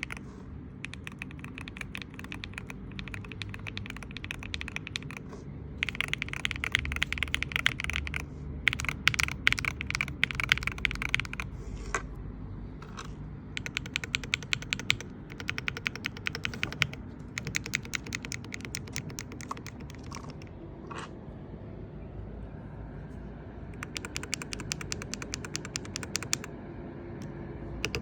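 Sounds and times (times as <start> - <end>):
mechanical keyboard typing: 0.0 - 11.6, 12.8 - 20.5, 23.8 - 26.5, 27.8 - 28.0.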